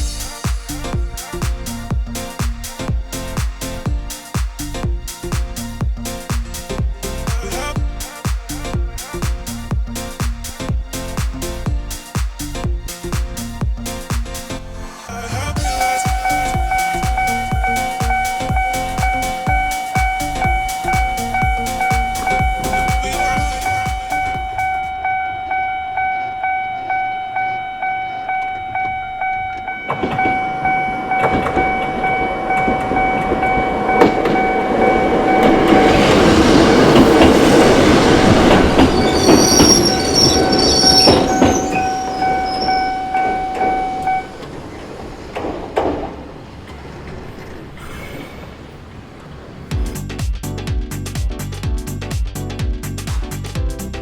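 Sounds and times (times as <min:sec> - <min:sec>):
high wheel squeal: 0:15.1 - 0:45.6, 0:46.4 - 0:49.6
train wheels clattering: 0:15.6 - 0:25.6, 0:28.2 - 0:47.8
level crossing alarm ringing: 0:15.6 - 0:46.0.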